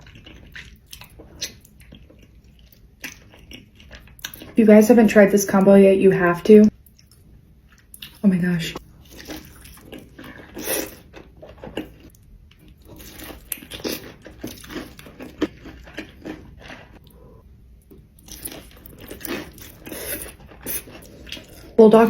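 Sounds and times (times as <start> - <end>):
crunchy bites and chewing: 9.0 - 17.1, 18.1 - 21.8.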